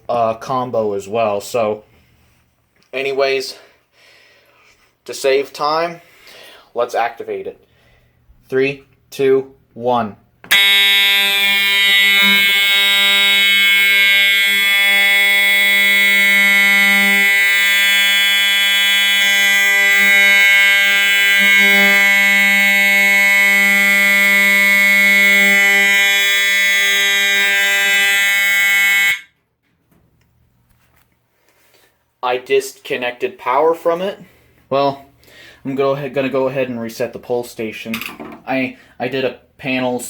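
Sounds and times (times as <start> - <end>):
fire alarm horn: 10.5 - 29.4.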